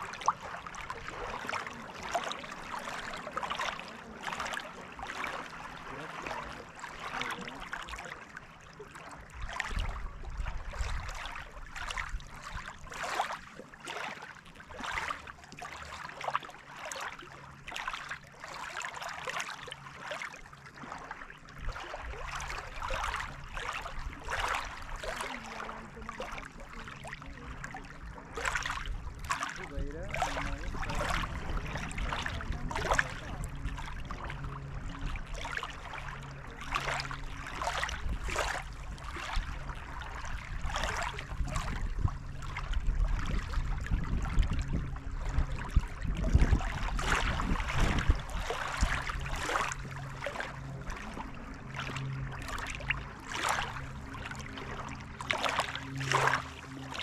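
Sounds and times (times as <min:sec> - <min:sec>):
waves lapping on shore: 0:00.0 - 0:57.0
low rumble: 0:21.6 - 0:57.0.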